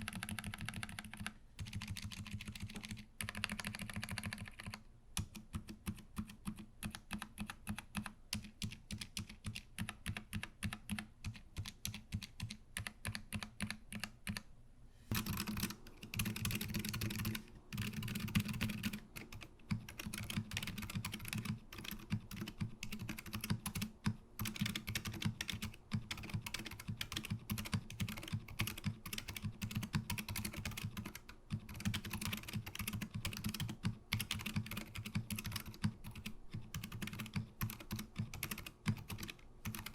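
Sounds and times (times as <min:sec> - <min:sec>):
typing on mechanical keyboard: 0:00.0 - 0:14.5, 0:15.1 - 0:39.9.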